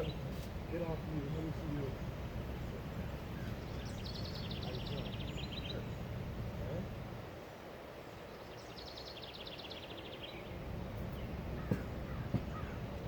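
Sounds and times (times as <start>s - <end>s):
songbird trilling: 0.0s - 6.1s, 8.3s - 13.0s
low outdoor noise: 0.0s - 13.0s
sharp tap: 11.6s - 12.6s.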